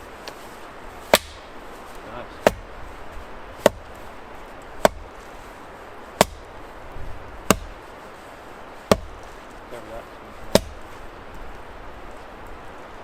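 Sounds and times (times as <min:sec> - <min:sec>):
axe chopping wood: 0:01.1 - 0:01.5, 0:02.4 - 0:02.7, 0:03.6 - 0:04.0, 0:04.8 - 0:05.2, 0:06.2 - 0:06.5, 0:07.4 - 0:07.8, 0:08.9 - 0:09.2, 0:10.5 - 0:10.9.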